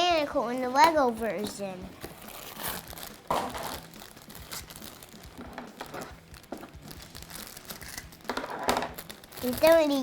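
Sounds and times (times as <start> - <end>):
packaging crinkling and rustling: 2.0 - 10.0
sharp crackle: 8.9 - 10.0.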